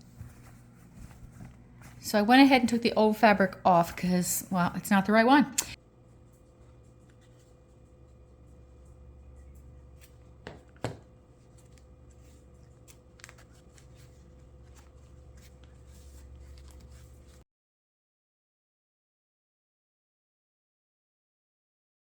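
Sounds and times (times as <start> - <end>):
fabric rustling: 0.0 - 2.2
low hum: 0.0 - 17.4.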